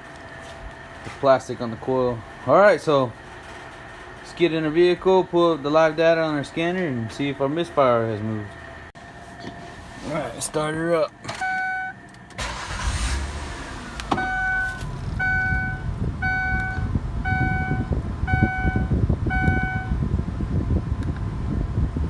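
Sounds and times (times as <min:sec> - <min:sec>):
car engine cranking and idling: 0:00.0 - 0:21.4
dashboard warning chime: 0:11.4 - 0:12.8, 0:14.1 - 0:20.0.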